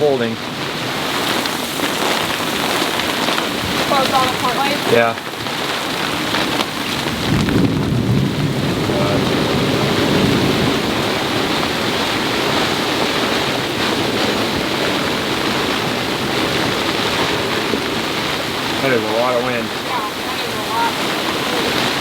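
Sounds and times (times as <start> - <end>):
heavy rain: 0.0 - 22.0
squall wind: 0.0 - 22.0
deep rumble: 6.9 - 22.0.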